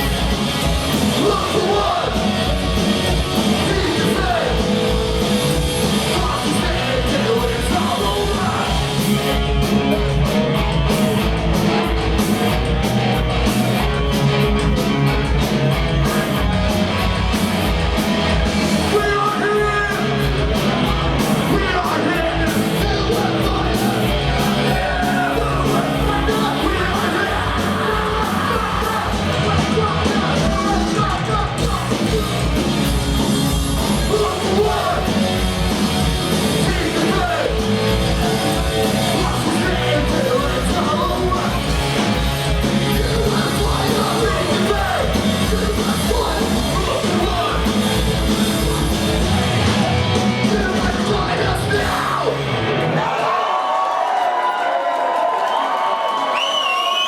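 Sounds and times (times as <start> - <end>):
shouted vocals: 0.0 - 11.2, 18.7 - 32.8, 33.8 - 42.0, 42.6 - 57.0
punk rock band playing: 0.0 - 53.2.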